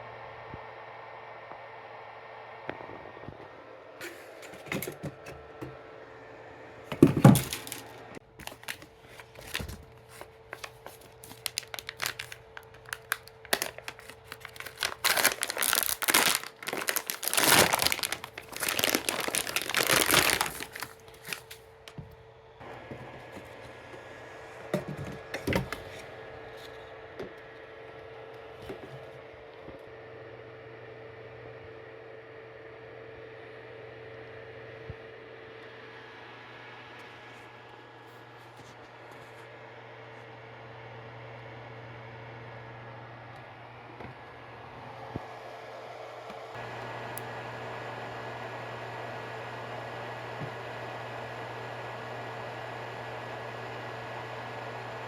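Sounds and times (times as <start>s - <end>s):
plastic packaging crinkling and tearing: 7.1s - 21.7s.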